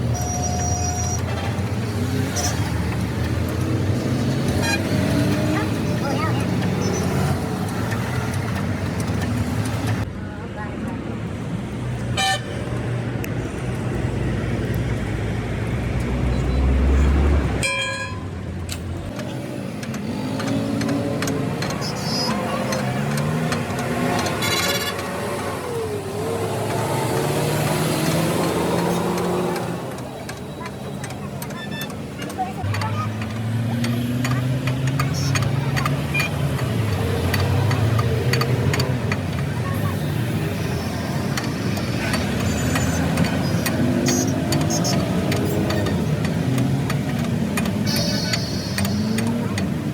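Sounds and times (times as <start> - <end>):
vehicle engine humming: 0.0 - 49.9
car horn toots: 17.6 - 18.3, 47.8 - 49.2.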